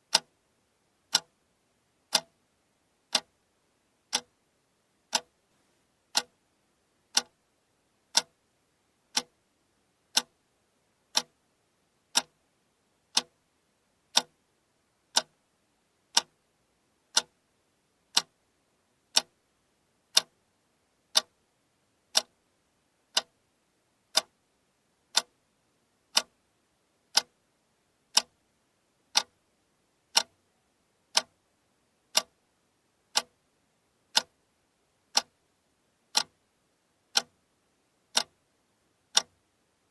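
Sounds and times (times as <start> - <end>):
alarm clock ticking: 7.1 - 7.3, 16.1 - 16.3.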